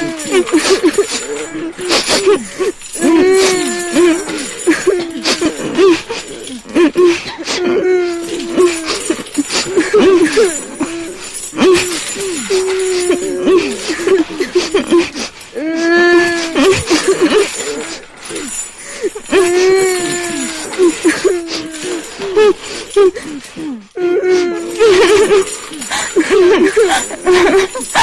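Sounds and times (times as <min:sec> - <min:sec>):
ghostly moaning voices: 0:00.0 - 0:07.0, 0:07.6 - 0:14.9
metal chains rattling: 0:00.0 - 0:28.0.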